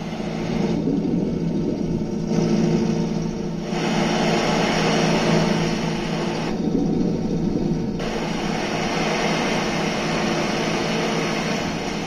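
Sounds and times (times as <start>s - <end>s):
steady rumble: 0.0s - 12.0s
hiss: 3.6s - 6.6s, 8.0s - 12.0s.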